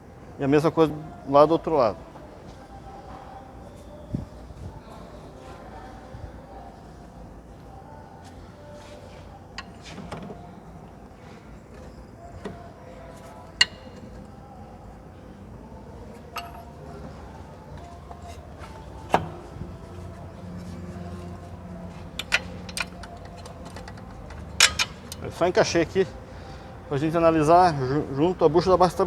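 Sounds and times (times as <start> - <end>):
low workshop hum: 0.0 - 29.0
metallic clicks of tools and bolts: 13.6 - 14.2, 16.4 - 16.8, 22.1 - 25.2.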